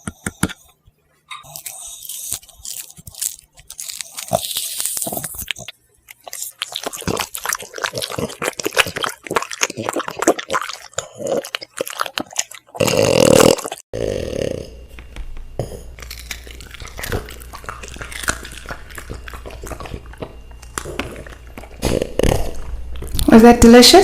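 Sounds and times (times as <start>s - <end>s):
dog chewing food: 1.4s - 13.8s, 15.5s - 23.4s
steady low hum: 14.0s - 24.0s.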